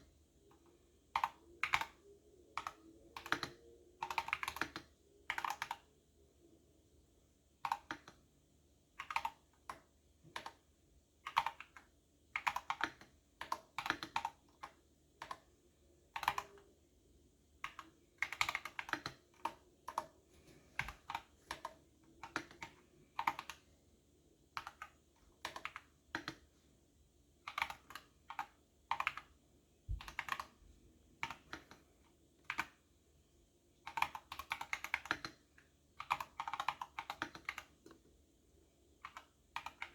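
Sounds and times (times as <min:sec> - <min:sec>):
keyboard typing clicks: 0:01.1 - 0:02.0, 0:02.6 - 0:05.9, 0:07.6 - 0:08.2, 0:09.0 - 0:15.5, 0:16.1 - 0:16.7, 0:17.6 - 0:20.2, 0:20.8 - 0:23.6, 0:24.5 - 0:26.5, 0:27.5 - 0:29.3, 0:29.9 - 0:30.6, 0:31.2 - 0:31.8, 0:32.4 - 0:32.8, 0:33.8 - 0:35.4, 0:36.0 - 0:38.0, 0:39.0 - 0:39.9.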